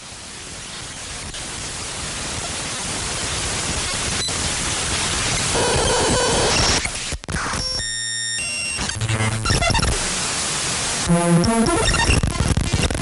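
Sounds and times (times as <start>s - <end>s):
static hiss: 0.0s - 13.0s
harsh buzzy tone: 5.4s - 10.2s, 11.0s - 13.0s.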